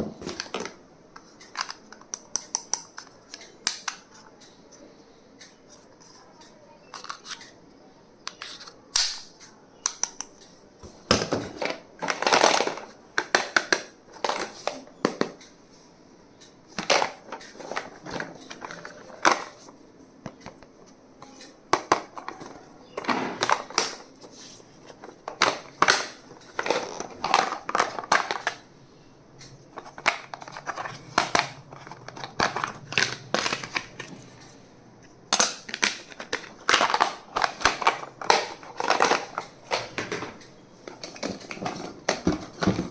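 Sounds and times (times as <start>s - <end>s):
plastic wrappers crinkling: 29.7s - 34.5s, 35.4s - 40.4s.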